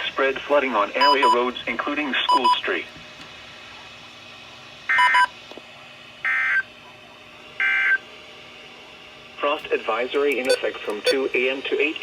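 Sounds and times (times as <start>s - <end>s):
digital data tone bursts: 1.0s - 1.4s, 10.5s - 11.2s.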